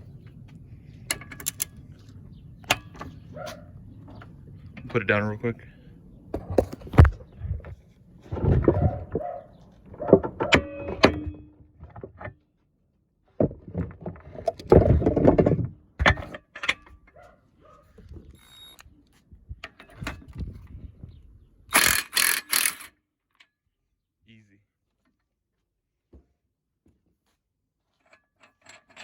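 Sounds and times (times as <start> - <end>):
metal hand tools clunking: 8.3 - 12.3.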